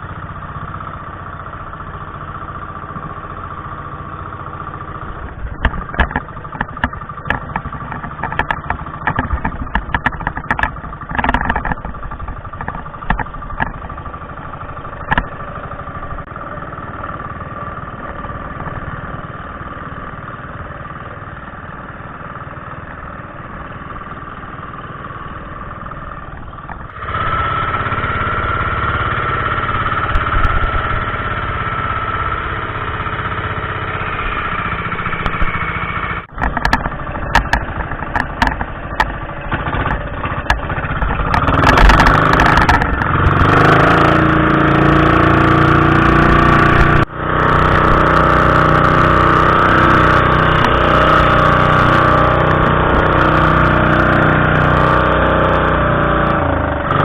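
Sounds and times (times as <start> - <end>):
boat engine running: 0.0 - 57.0
clicks and knocks: 36.2 - 43.8.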